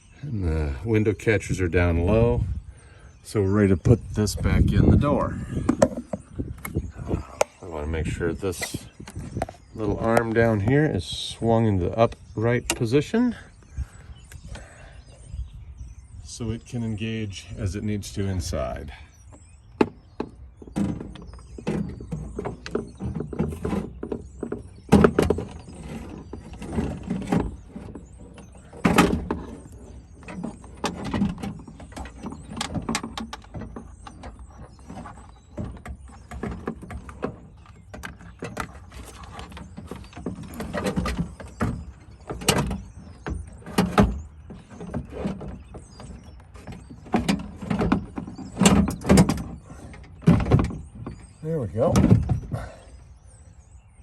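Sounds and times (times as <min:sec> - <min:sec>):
metal clunks and scrapes: 0:04.2 - 0:11.2, 0:19.8 - 0:52.8.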